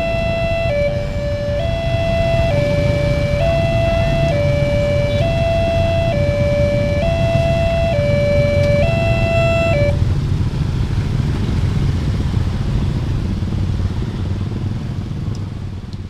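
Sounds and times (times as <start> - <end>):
level crossing warning siren: 0.0 - 10.0
road traffic rumble: 0.0 - 16.0.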